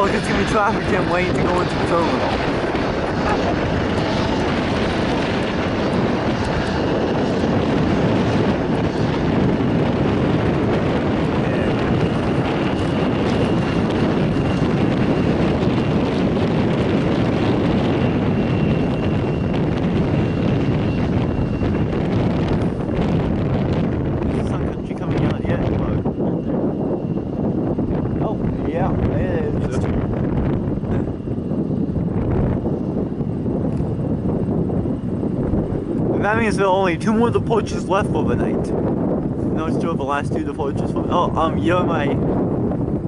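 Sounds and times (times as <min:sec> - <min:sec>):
jet engines rushing: 0:00.0 - 0:43.0.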